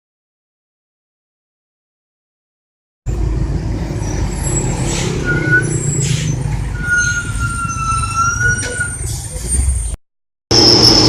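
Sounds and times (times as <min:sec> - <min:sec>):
diesel truck engine rumbling: 0:03.1 - 0:11.0.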